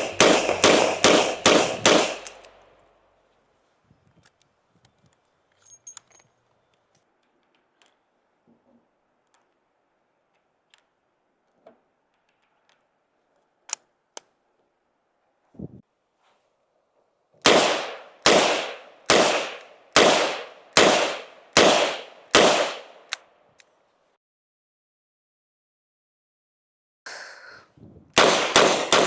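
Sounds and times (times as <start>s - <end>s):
revolver gunshots: 0.0s - 2.4s, 17.4s - 23.0s, 28.2s - 29.0s
light metallic clicks of gun handling: 4.2s - 8.1s, 23.0s - 23.8s.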